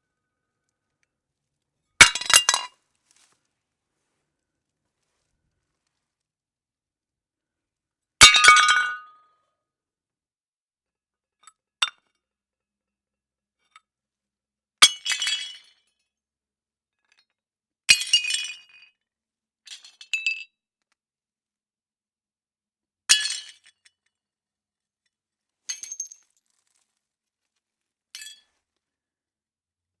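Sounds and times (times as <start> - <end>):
plates smashing: 2.0 - 2.7.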